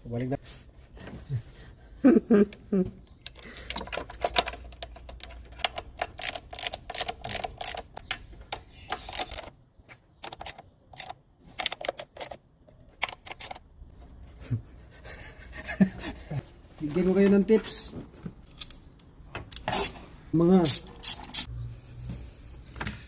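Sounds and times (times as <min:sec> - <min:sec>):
hand tools and metal parts clacking: 0:03.2 - 0:13.6, 0:17.2 - 0:21.5.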